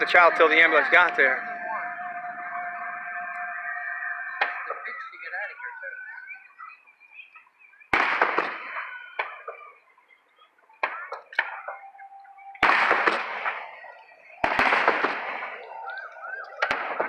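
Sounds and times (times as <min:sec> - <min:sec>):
fireworks booming: 0:00.0 - 0:05.2, 0:07.8 - 0:09.8, 0:12.6 - 0:17.0.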